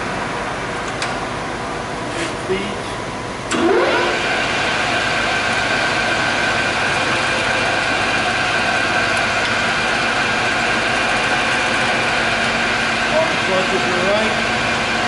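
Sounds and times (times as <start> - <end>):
lathe motor whining and humming: 3.0 - 15.0.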